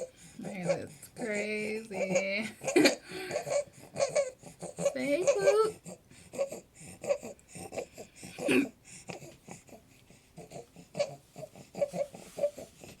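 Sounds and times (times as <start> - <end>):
infant crying: 0.0 - 8.7
infant stridor breathing: 0.0 - 13.0.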